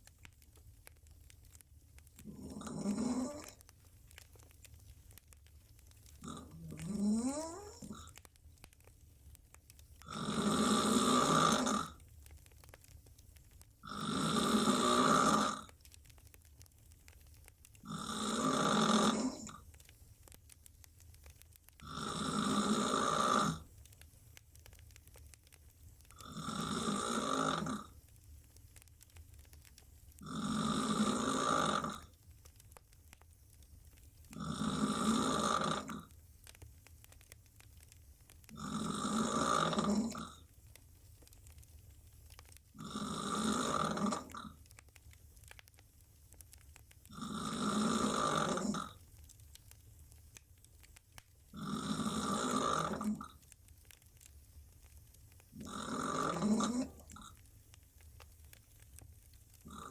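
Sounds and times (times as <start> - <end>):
woman snoring: 2.3 - 3.6, 6.2 - 8.0, 10.0 - 12.0, 13.8 - 15.7, 17.8 - 19.6, 21.8 - 23.7, 26.2 - 27.9, 30.2 - 32.1, 34.4 - 36.1, 38.5 - 40.4, 42.8 - 44.5, 47.1 - 49.0, 51.6 - 53.3, 55.6 - 57.2, 59.7 - 59.9.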